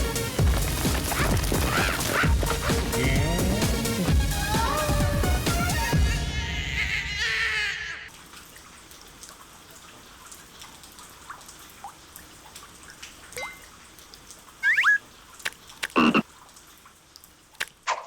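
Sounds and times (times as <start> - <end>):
water dripping: 8.1 - 18.0
short rising chirps: 14.6 - 15.0.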